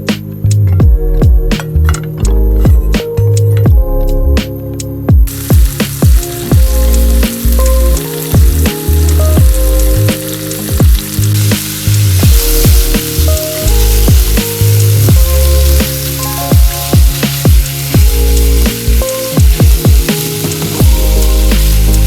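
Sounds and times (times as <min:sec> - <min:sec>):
background music with bass kicks: 0:00.0 - 0:22.0
food sizzling in a frying pan: 0:05.3 - 0:22.0.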